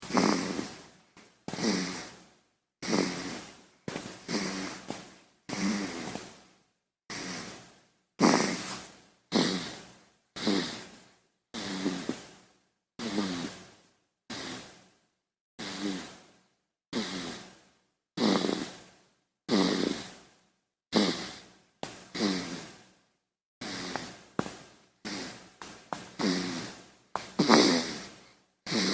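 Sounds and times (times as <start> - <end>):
baby snoring: 0.0 - 0.9, 1.5 - 2.2, 2.8 - 6.4, 7.1 - 12.4, 13.0 - 13.7, 14.3 - 14.8, 15.6 - 16.3, 16.9 - 17.6, 18.2 - 18.9, 19.5 - 20.2, 20.9 - 21.5, 22.1 - 22.8, 23.6 - 28.9.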